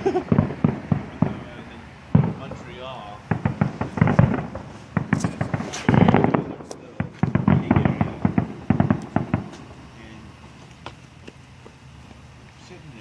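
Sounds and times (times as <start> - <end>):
fireworks banging and crackling: 0.0 - 13.0.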